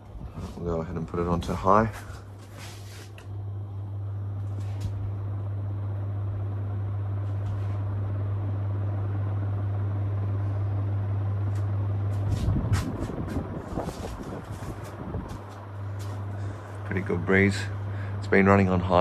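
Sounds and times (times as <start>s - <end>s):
ceiling fan running: 0.0s - 19.0s
wind buffeting microphone: 12.2s - 15.6s.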